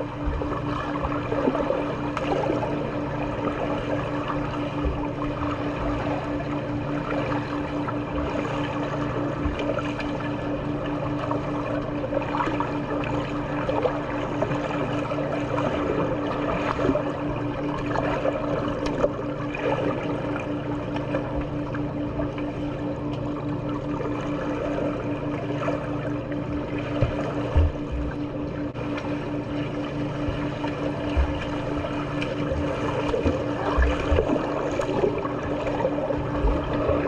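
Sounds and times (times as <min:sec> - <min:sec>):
pulsing mechanical hum: 0:00.0 - 0:37.0
pool water splashing: 0:30.4 - 0:37.0.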